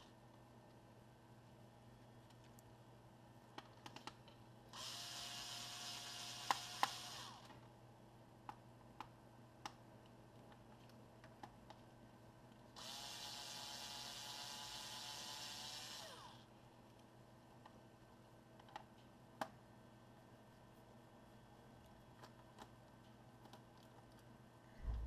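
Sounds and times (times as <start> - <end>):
electric screwdriver running: 4.8 - 7.5, 12.8 - 16.4.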